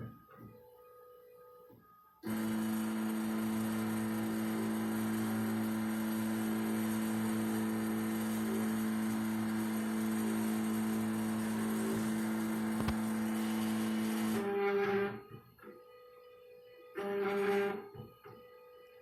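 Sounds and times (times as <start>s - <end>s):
milling machine motor humming: 2.2s - 14.6s.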